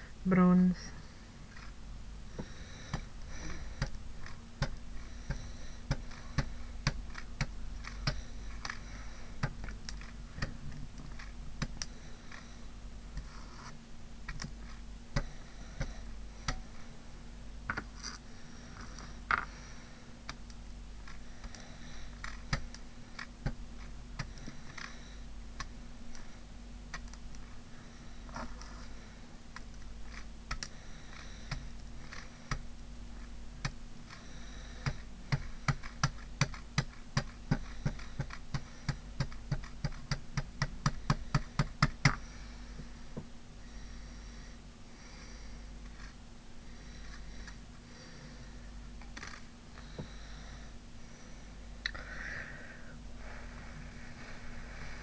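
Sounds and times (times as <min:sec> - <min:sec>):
steady low hum: 0:00.0 - 0:55.0
light tapping and scratching: 0:01.4 - 0:16.9, 0:28.2 - 0:42.2.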